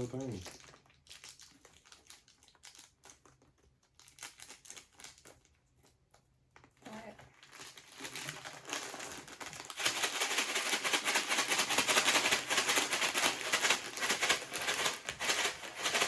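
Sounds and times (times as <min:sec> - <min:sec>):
dry noodles rattling in a bag: 0:00.0 - 0:03.3, 0:07.4 - 0:16.0.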